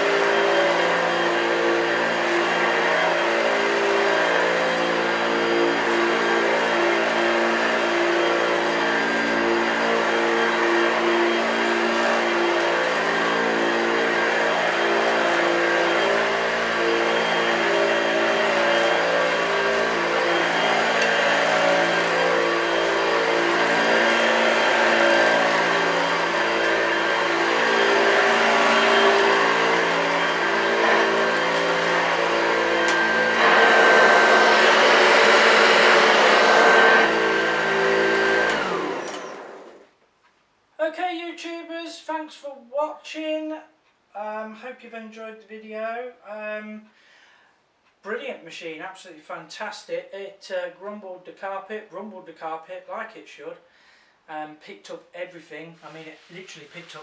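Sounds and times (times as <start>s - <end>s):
vacuum motor winding down: 0.0s - 39.9s
vacuum cleaner running: 0.0s - 40.0s.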